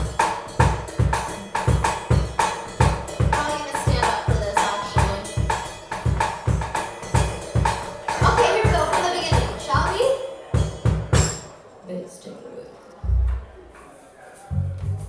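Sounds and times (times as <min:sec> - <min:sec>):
kick drum beat: 0:00.0 - 0:11.5
cymbal or tambourine hits: 0:00.0 - 0:11.6.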